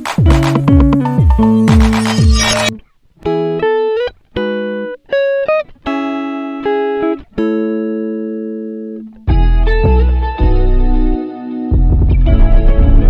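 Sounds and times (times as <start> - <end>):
plucked guitar music: 0.0 - 13.0
deep bass: 9.3 - 13.0.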